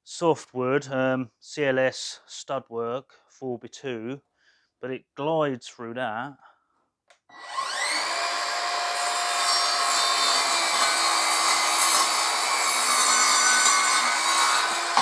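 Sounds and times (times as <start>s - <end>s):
mitre saw whining and cutting wood: 7.3s - 15.0s.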